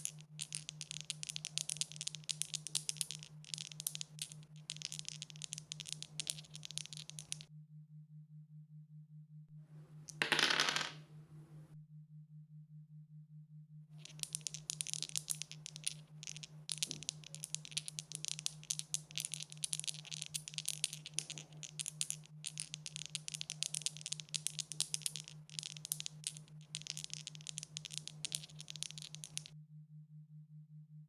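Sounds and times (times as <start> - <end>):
dice rattling: 0.0 - 7.5, 9.9 - 11.6, 14.0 - 29.5.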